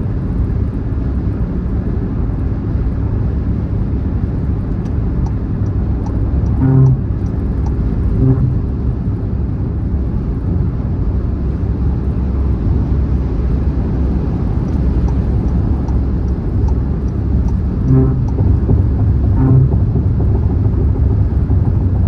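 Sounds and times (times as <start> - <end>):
buzzy thump: 6.5 - 7.2, 8.2 - 8.8, 17.8 - 22.0
tyre and road rumble: 14.7 - 22.0.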